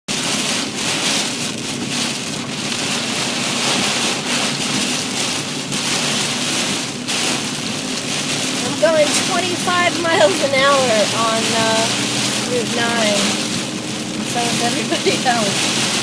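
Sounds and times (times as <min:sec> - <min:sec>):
heavy rain on car windshield: 0:00.1 - 0:16.0
low hum: 0:06.8 - 0:16.0.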